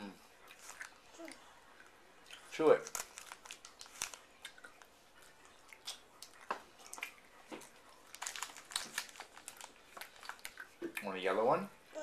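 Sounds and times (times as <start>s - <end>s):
child crunching hard candy: 0.5s - 1.4s, 2.4s - 4.9s, 5.5s - 10.8s.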